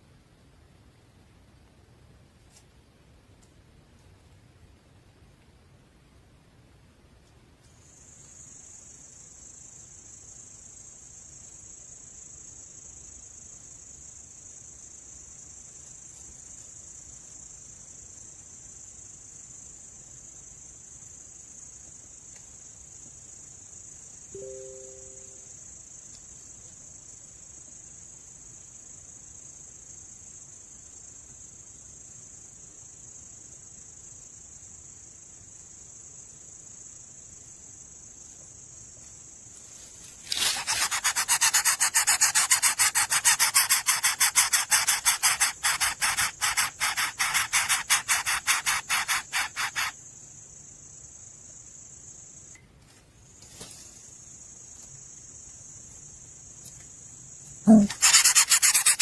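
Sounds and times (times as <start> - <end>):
crickets chirring: 7.7 - 59.0
loud rapid rasping pulse: 40.6 - 49.9, 57.8 - 59.0.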